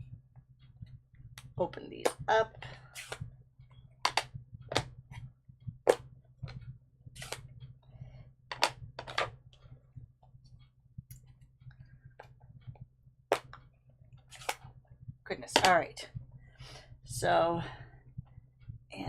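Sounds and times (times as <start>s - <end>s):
steady low hum: 0.0s - 19.0s
plastic clicks and snaps: 4.1s - 4.9s.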